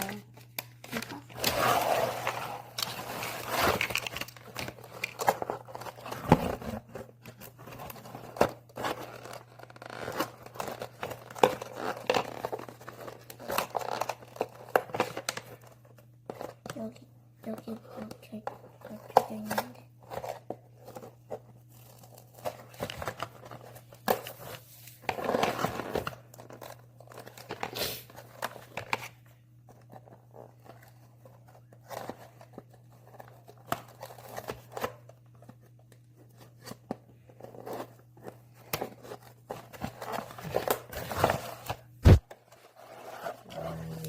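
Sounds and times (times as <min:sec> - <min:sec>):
packaging and tape tearing: 0:00.0 - 0:07.0, 0:07.6 - 0:15.4.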